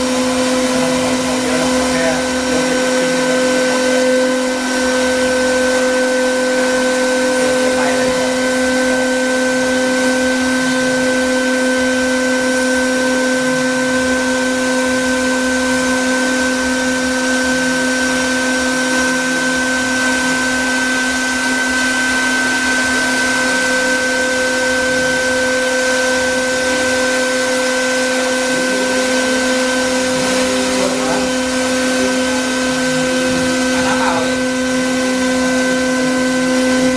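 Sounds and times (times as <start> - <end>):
cooling fan rushing: 0.0 - 36.9
spindle whine: 0.0 - 36.9.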